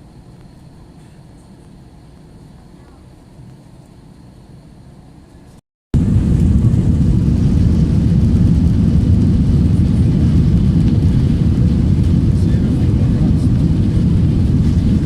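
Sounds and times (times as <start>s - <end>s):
jet engine cabin rumble: 0.0s - 15.0s
rushing air: 6.0s - 15.0s.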